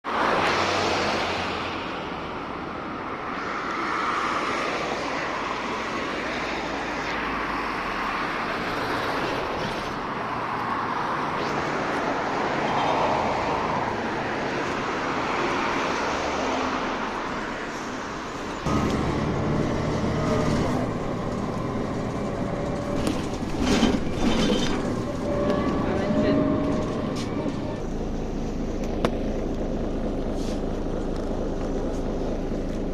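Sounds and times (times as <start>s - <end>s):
bus engine and road noise: 0.0s - 32.9s.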